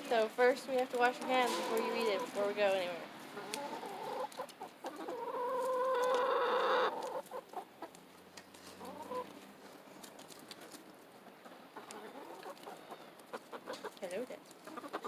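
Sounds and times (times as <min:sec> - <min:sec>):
hens calling: 0:00.0 - 0:07.9, 0:08.6 - 0:09.4, 0:11.2 - 0:15.0.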